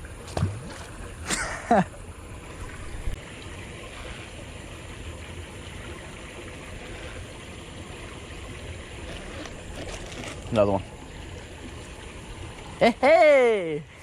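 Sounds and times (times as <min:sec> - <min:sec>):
water pouring over waterfall: 0:03.2 - 0:14.0.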